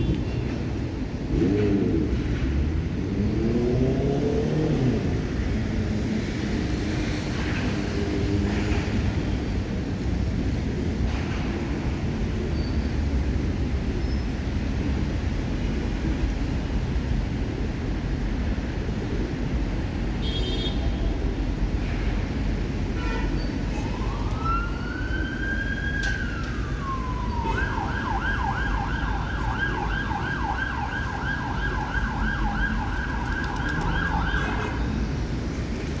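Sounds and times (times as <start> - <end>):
emergency vehicle siren: 23.8 - 35.4.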